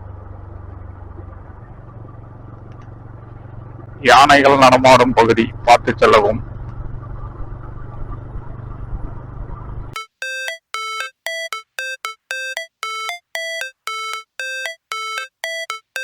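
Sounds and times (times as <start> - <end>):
background music: 10.0 - 16.0
two-pitch electronic chime: 10.0 - 16.0.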